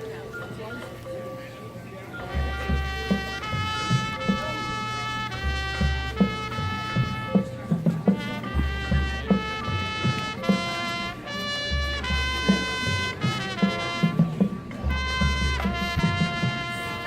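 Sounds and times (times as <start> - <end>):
brass chords: 2.1 - 17.0
low bass notes: 2.3 - 7.4, 14.8 - 16.7
drum hits: 2.3 - 17.0.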